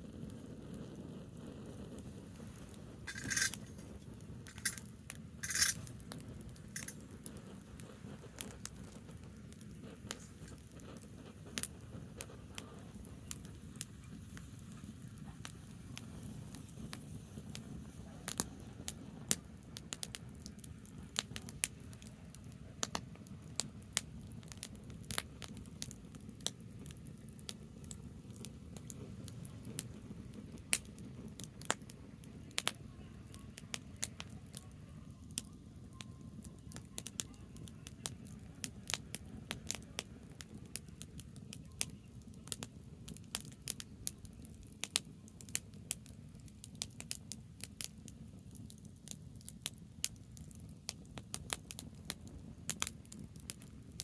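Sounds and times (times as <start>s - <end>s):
fire hissing: 0.0s - 19.3s
fire crackling and popping: 0.0s - 54.0s.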